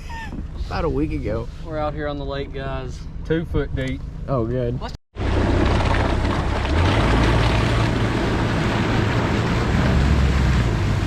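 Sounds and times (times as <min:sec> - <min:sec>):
low boat rumble: 0:05.2 - 0:11.0.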